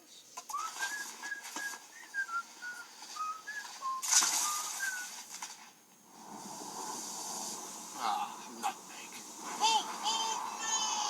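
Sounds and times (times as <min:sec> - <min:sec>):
person whistling a melody: 0:00.5 - 0:05.1
rushing noise burst: 0:06.0 - 0:11.0.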